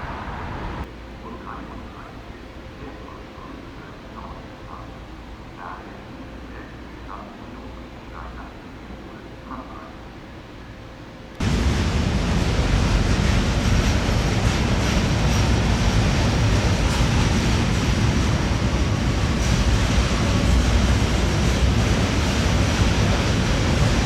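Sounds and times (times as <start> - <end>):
freight train rumble: 0.0 - 0.9, 10.9 - 24.0.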